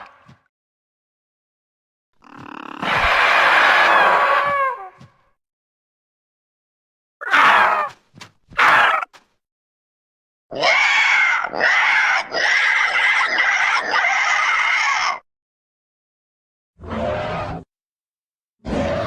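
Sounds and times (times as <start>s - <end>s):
harsh bird screams: 2.3s - 5.0s, 7.2s - 8.0s, 8.6s - 9.1s, 10.5s - 15.2s.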